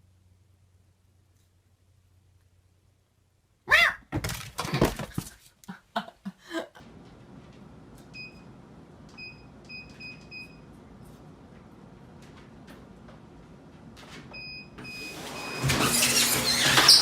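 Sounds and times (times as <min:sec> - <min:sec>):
short pitched yelps: 0:03.7 - 0:04.1.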